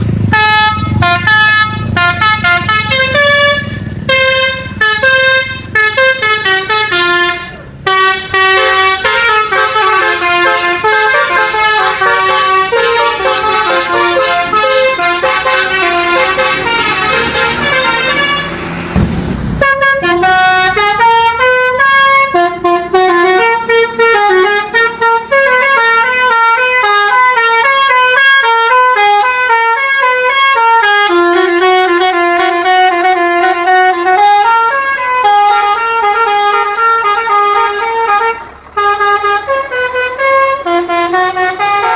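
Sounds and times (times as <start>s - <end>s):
bus musical horn playing tunes: 0.0s - 41.9s
low rumble: 18.9s - 21.0s.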